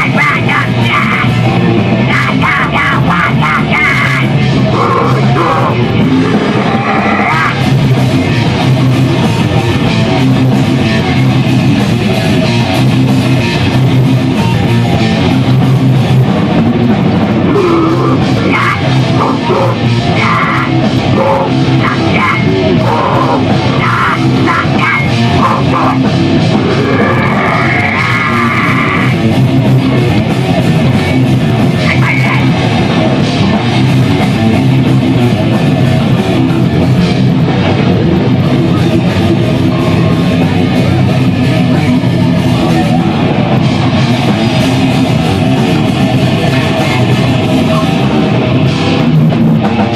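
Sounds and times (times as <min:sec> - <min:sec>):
person singing or shouting: 0:00.0 - 0:07.8, 0:17.4 - 0:29.3, 0:31.8 - 0:32.6
distorted electric guitar: 0:00.0 - 0:49.9
drum kit: 0:00.0 - 0:49.9.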